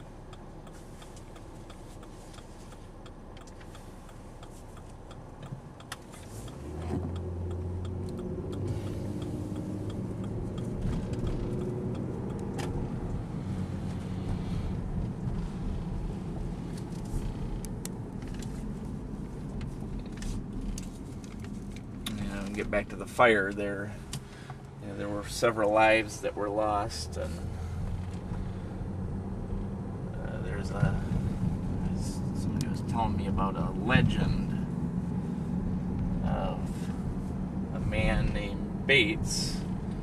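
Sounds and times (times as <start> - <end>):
turn signal clicking: 0.0 - 22.8
car engine: 0.0 - 40.0
road noise: 0.0 - 40.0.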